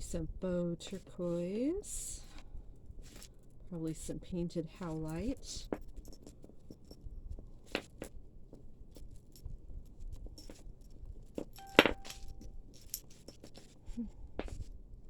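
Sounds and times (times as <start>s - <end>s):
jewelry clinking and rattling: 4.9s - 7.0s, 10.2s - 13.7s.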